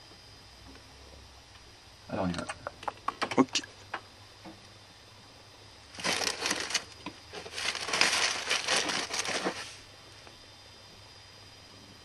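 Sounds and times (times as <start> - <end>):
brittle material crunching by hand: 6.0 - 9.8.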